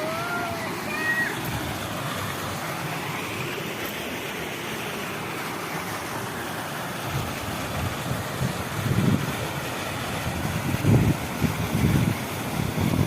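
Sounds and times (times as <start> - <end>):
water rushing: 0.0 - 13.0.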